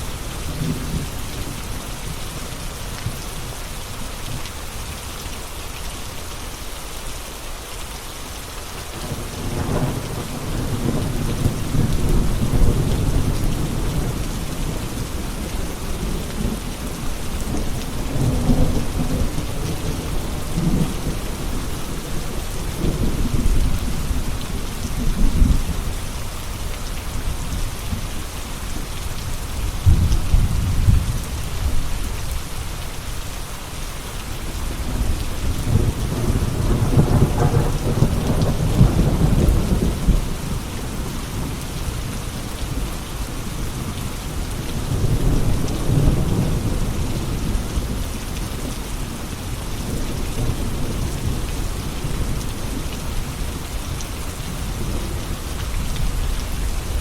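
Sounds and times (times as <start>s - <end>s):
steady rain: 0.0s - 57.0s
thunder rumbling: 29.6s - 31.9s, 34.8s - 41.6s.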